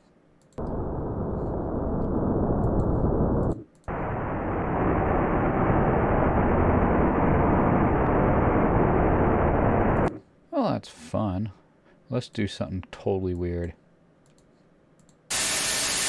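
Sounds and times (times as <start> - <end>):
distorted rain hiss: 0.6 - 10.1, 15.3 - 16.0.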